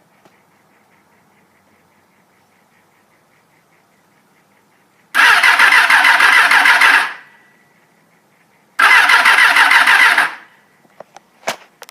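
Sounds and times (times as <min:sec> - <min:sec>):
motorcycle electric starter cranking: 0:05.2 - 0:07.2, 0:08.8 - 0:10.5.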